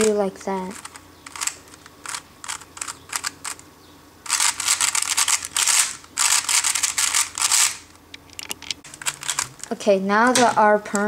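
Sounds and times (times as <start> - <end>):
puzzle cube clacking turns: 0.7 - 3.6, 4.3 - 9.8.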